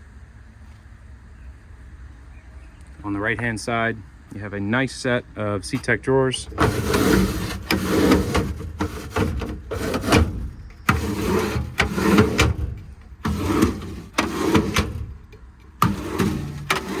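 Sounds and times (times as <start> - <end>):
metal drawers sliding open and shut: 5.6 - 17.0.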